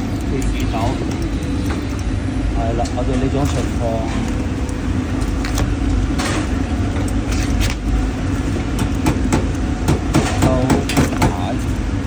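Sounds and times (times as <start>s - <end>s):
low mechanical rumble: 0.0s - 12.0s.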